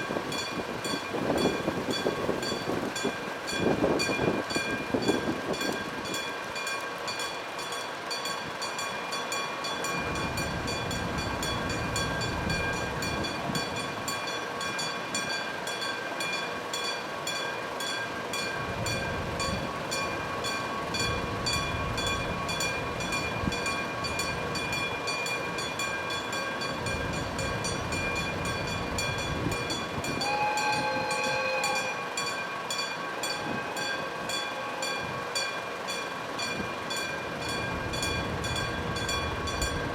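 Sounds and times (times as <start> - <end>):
train wheels rumbling: 0.0 - 39.9
locomotive horn blast: 29.6 - 35.4.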